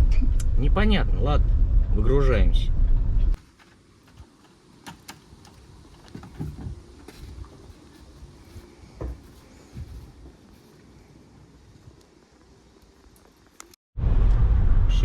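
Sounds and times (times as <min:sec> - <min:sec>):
buckets knocking and thudding: 0:03.4 - 0:10.7.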